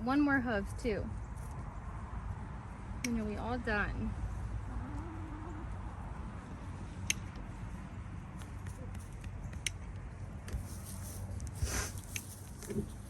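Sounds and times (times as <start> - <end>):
low steady rumble: 0.0 - 13.0
shears snipping hoof: 8.3 - 13.0.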